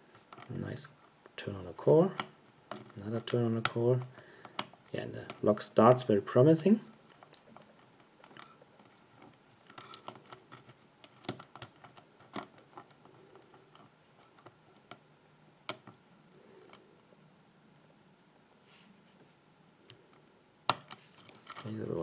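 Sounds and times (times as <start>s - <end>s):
lock pick metallic clicks: 7.1s - 15.0s, 15.6s - 16.0s, 20.7s - 21.7s.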